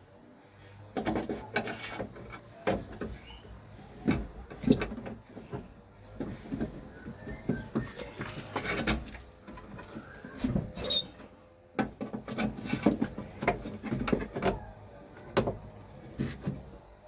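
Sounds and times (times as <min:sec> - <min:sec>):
sharp metallic clink: 0:04.6 - 0:04.9
tools clicking and scraping: 0:04.6 - 0:04.9.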